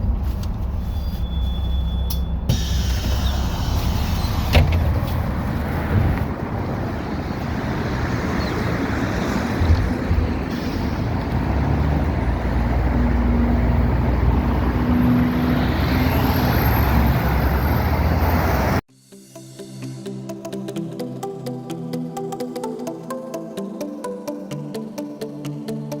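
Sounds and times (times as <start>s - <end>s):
bus engine rumble and road noise: 0.0s - 18.9s
electronic music: 18.9s - 26.0s.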